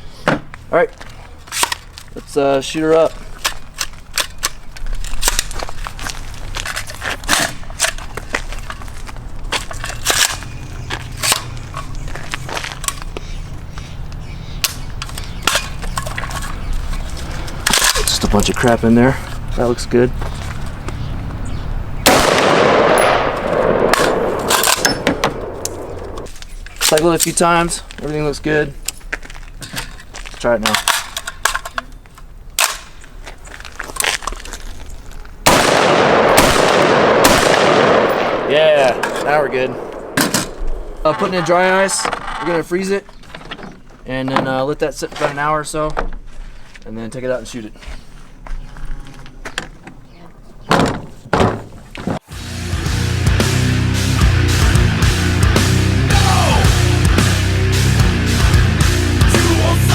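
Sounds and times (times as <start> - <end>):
rifle being handled: 0.5 - 2.3, 2.9 - 13.3, 14.6 - 18.2, 23.0 - 28.2, 28.8 - 35.2
low wind rumble: 13.4 - 26.3, 35.4 - 42.0
rifle shots cracking: 22.0 - 26.3, 35.4 - 41.1.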